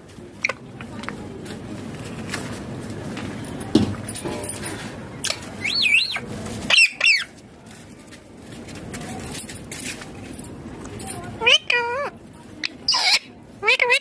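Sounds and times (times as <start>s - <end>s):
parakeet squawking: 11.4s - 14.0s.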